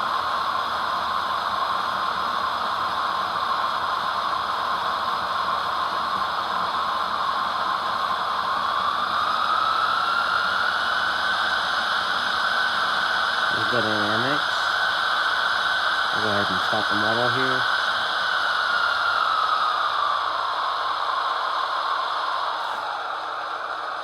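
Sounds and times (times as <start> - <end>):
steady blower hiss: 0.0 - 24.0
rising whine: 5.2 - 24.0.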